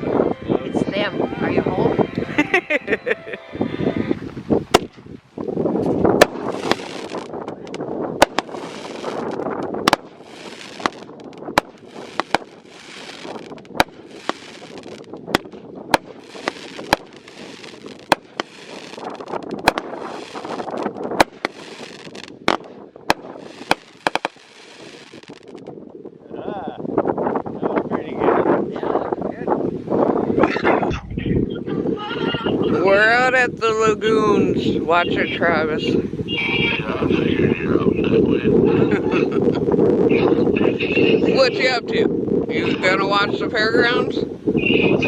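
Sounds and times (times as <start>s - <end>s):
fireworks crackling: 4.6s - 25.7s
fireworks bangs: 4.7s - 5.0s, 5.8s - 25.7s.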